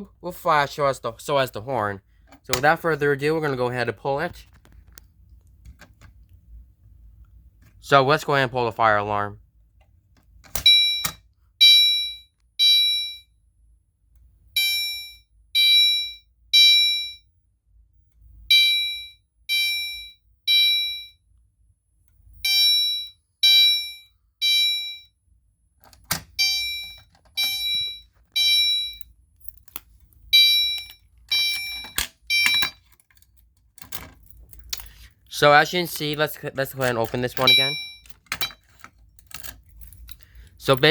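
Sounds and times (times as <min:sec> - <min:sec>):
fire alarm chime tones: 0:10.6 - 0:13.3, 0:14.6 - 0:17.3, 0:18.5 - 0:21.2, 0:22.4 - 0:25.2, 0:26.4 - 0:29.1, 0:30.3 - 0:32.8, 0:37.4 - 0:38.1.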